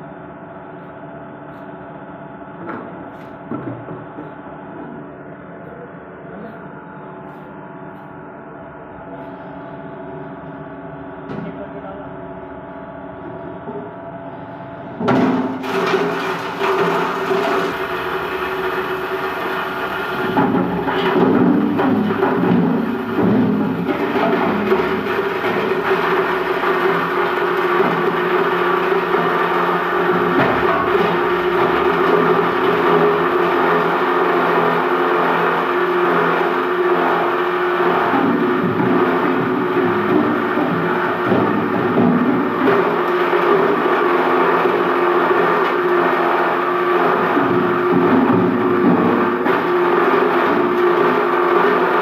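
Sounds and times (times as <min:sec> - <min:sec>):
machine hum: 0:04.1 - 0:52.0
hard plastic grinding: 0:15.6 - 0:34.4.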